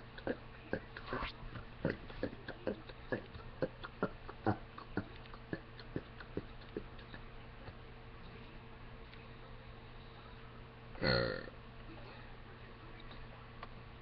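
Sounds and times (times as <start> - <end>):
person making mouth clicks: 0.2 - 7.8.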